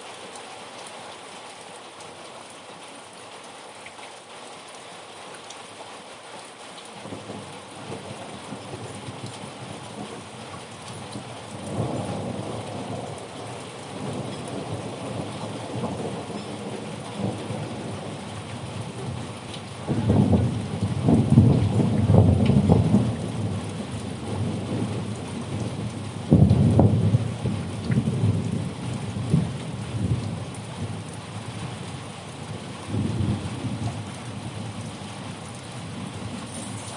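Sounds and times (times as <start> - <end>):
rain falling: 0.0 - 36.9
rolling thunder: 10.9 - 31.7, 32.5 - 34.9.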